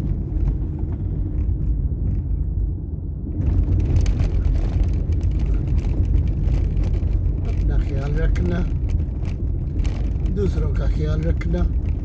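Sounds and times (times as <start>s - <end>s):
car cabin rumble: 0.0s - 12.0s
crackling rustling noise: 3.4s - 10.5s.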